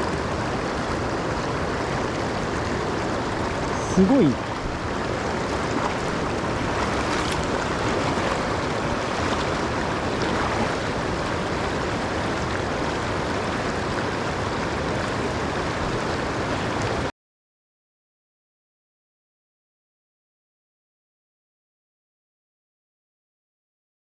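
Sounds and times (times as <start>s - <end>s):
river water rushing: 0.0s - 17.1s.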